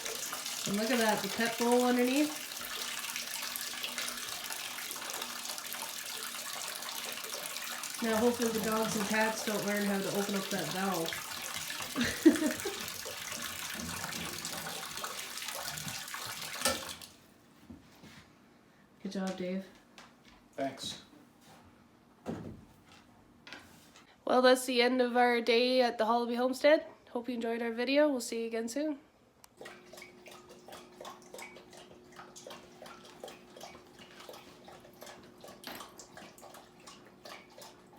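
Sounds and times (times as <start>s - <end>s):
water running into bowl: 0.0s - 17.2s.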